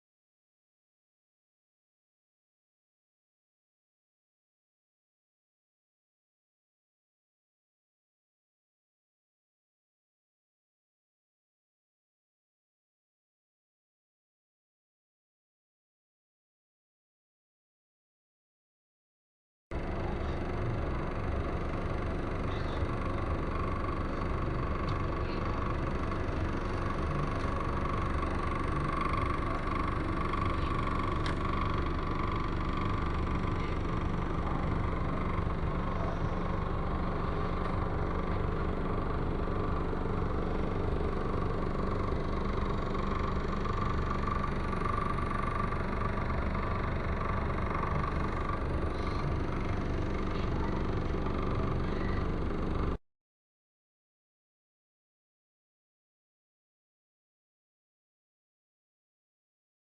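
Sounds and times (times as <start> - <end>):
vehicle engine droning: 19.8 - 53.0.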